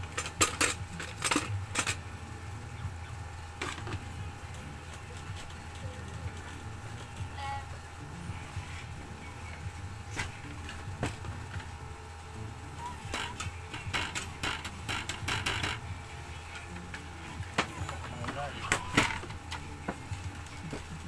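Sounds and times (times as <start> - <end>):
steady low hum: 0.0 - 21.0
tools clicking and knocking: 0.1 - 2.0, 13.1 - 15.9.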